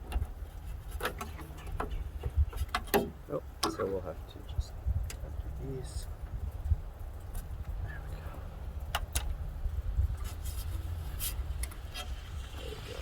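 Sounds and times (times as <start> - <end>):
sharp clicks and small knocks: 0.0 - 3.9, 8.8 - 9.4.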